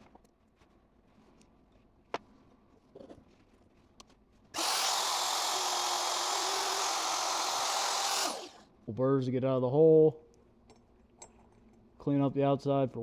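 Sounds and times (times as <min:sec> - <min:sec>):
power tool cutting metal: 0:04.6 - 0:08.6.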